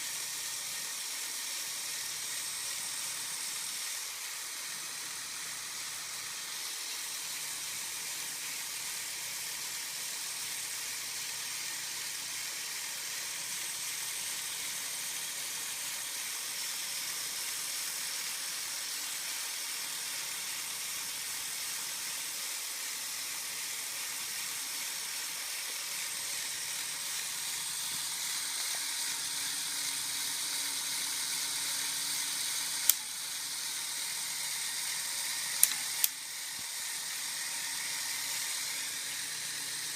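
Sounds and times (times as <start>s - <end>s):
electric motor and gears whirring: 0.0s - 39.9s
sharp click: 35.6s - 36.2s.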